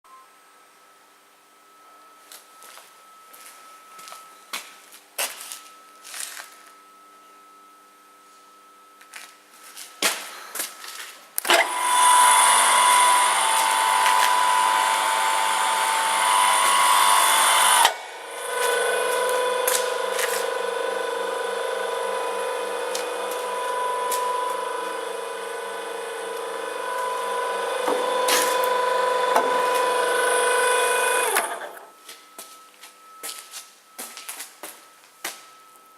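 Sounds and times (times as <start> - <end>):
saw stopping clack: 11.5 - 21.9, 22.5 - 31.8
circular saw cutting metal: 11.5 - 31.9.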